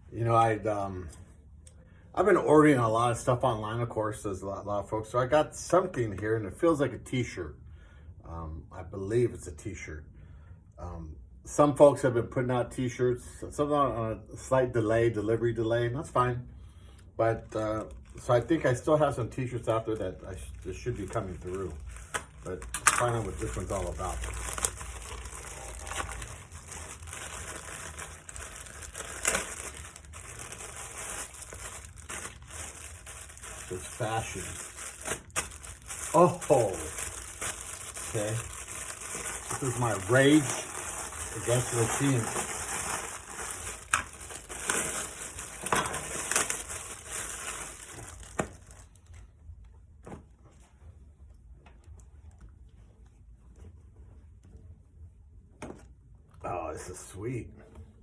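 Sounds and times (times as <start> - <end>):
package wrapping tearing and rustling: 19.7 - 49.0.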